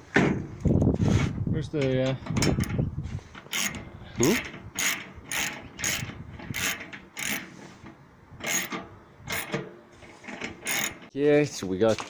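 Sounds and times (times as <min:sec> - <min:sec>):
ratchet wrench clicking: 0:03.4 - 0:07.4, 0:08.4 - 0:09.6, 0:10.6 - 0:11.1.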